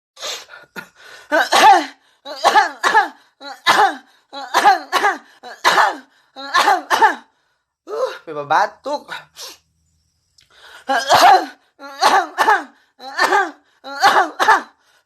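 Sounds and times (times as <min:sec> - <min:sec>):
person coughing theatrically: 0:01.3 - 0:07.3, 0:10.9 - 0:14.8.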